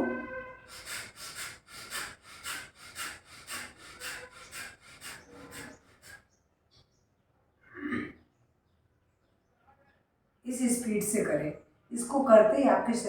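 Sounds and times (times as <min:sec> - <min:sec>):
rapid forceful nasal breathing: 0:00.7 - 0:06.4.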